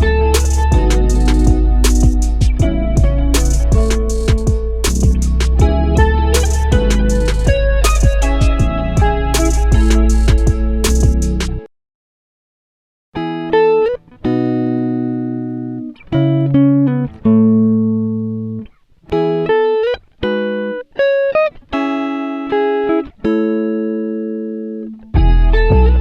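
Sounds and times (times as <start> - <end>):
melody of single notes and chords: 0.0 - 11.6.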